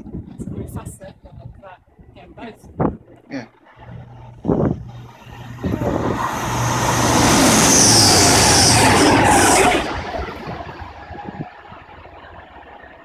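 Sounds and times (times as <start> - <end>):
train passing at speed: 4.8 - 13.0.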